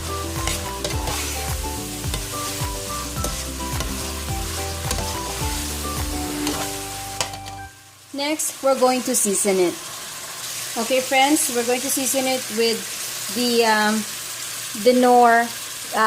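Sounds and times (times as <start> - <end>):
background music with steady beat: 0.0 - 7.9
food sizzling in a pot: 0.0 - 16.0.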